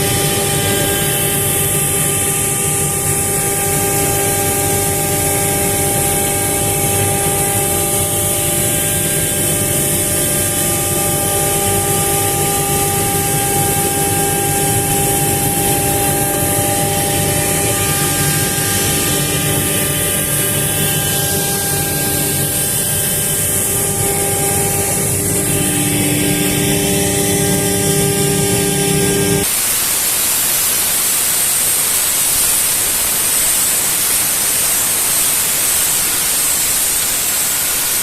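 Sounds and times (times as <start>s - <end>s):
router spindle whining: 0.0s - 29.6s.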